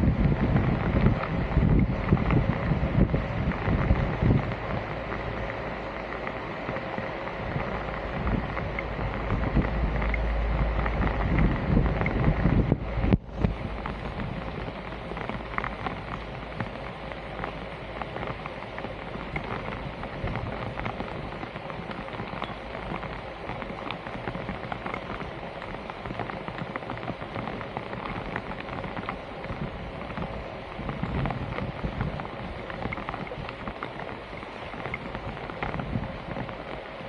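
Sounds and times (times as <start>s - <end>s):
water pattering: 0.0s - 37.0s
small scattered clicks: 13.0s - 37.0s.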